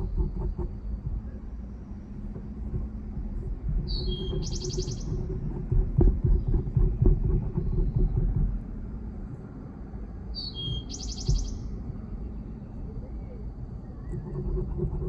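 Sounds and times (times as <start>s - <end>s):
low rumble: 0.0s - 15.0s
songbird call with trill: 3.8s - 5.3s, 10.4s - 11.7s.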